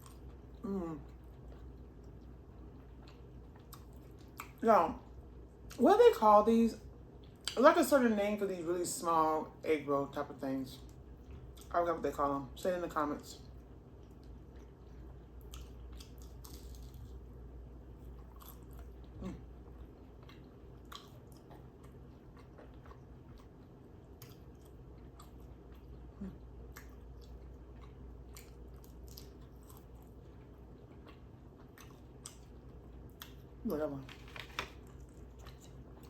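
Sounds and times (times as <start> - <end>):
crunchy chewing: 14.0 - 17.3, 18.0 - 33.5, 34.1 - 36.0.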